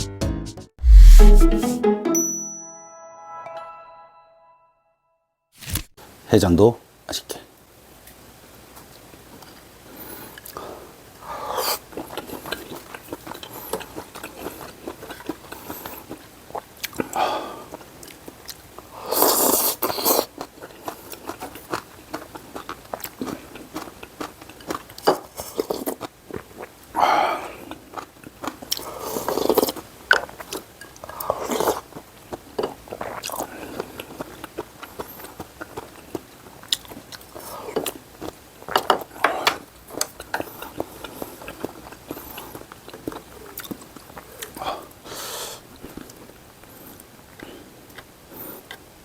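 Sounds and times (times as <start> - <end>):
person chewing: 0.8 - 1.6, 11.7 - 18.6, 19.2 - 44.6, 45.8 - 48.9.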